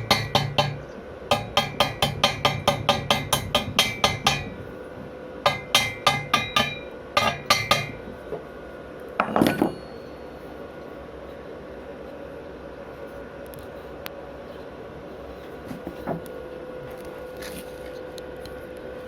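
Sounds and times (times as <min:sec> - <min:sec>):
chipping hammer striking metal: 0:00.0 - 0:04.6, 0:05.4 - 0:08.0.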